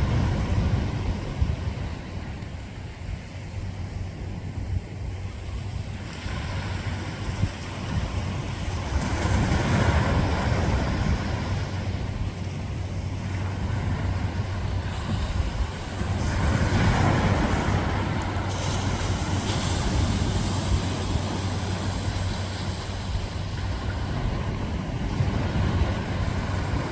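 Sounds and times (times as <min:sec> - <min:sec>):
ocean waves breaking: 0:00.0 - 0:26.9.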